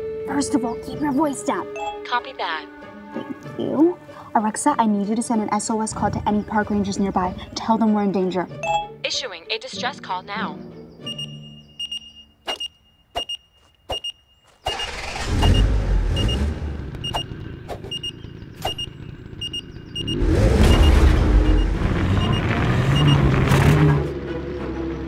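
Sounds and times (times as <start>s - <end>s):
vehicle engine rumbling: 3.0s - 8.9s, 13.4s - 25.0s
high electronic beeps: 8.6s - 9.0s, 11.0s - 16.4s, 17.0s - 23.2s.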